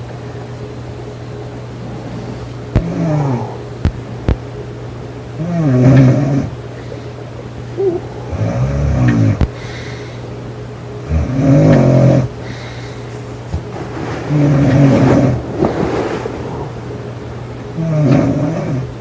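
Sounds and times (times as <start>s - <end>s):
steady low hum: 0.0s - 19.0s
girl snoring loudly: 2.8s - 3.6s, 5.4s - 6.5s, 7.8s - 9.4s, 11.1s - 12.3s, 17.8s - 18.9s.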